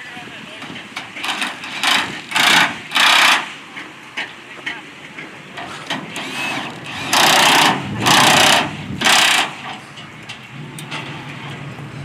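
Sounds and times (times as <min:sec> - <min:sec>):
pneumatic air tool rattling hiss: 0:01.2 - 0:03.5, 0:05.9 - 0:09.8
low engine-like rumble: 0:03.6 - 0:12.0.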